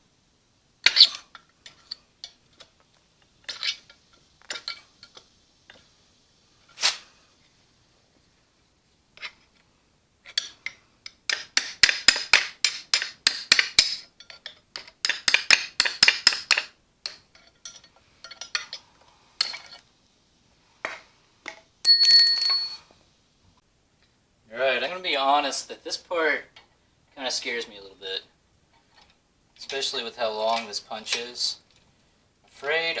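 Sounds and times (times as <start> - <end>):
metal tools clinking: 21.8 - 22.8
bright metallic ring: 21.8 - 22.9.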